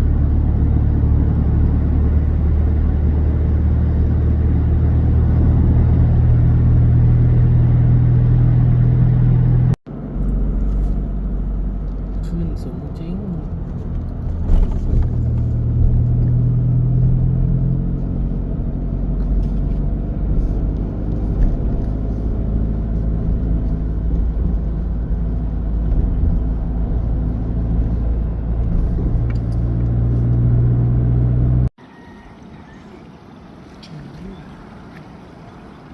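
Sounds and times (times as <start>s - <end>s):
vehicle engine and road noise: 0.0s - 35.9s.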